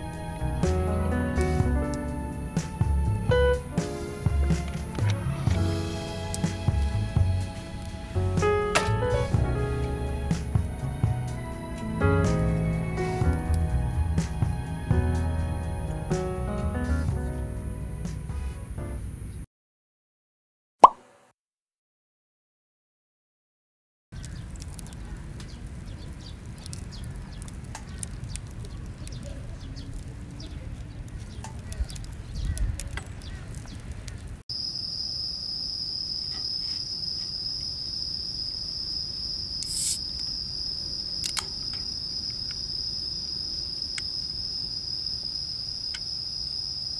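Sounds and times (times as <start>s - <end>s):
low outdoor rumble: 0.0s - 19.4s
insects trilling: 34.5s - 46.9s
insect rasp: 36.2s - 46.9s.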